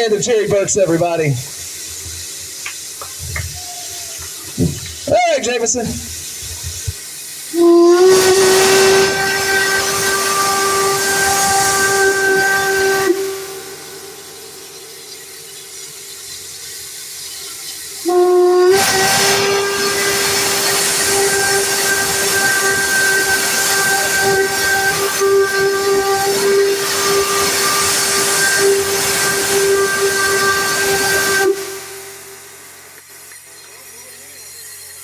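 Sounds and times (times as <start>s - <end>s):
steam hissing: 0.0s - 35.0s
steam whistle blast: 7.4s - 15.4s, 18.0s - 32.8s.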